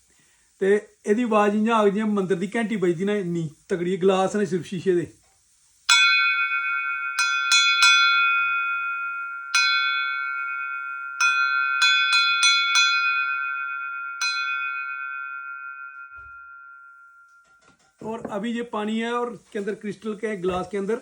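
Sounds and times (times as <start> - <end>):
crystal glass tapped ringing: 5.9 - 18.4.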